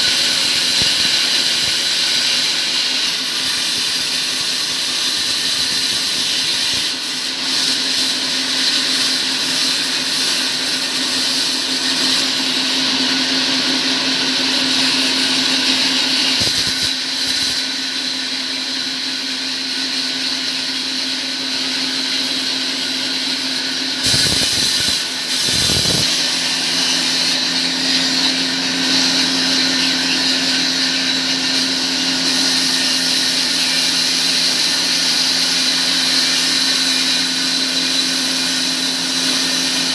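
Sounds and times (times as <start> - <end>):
motor-driven machine humming and hissing: 13.8 - 17.6, 22.2 - 39.9.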